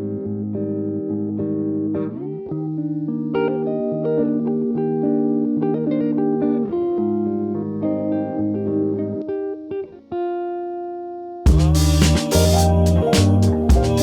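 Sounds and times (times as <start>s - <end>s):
plucked guitar with bass: 11.5s - 14.0s.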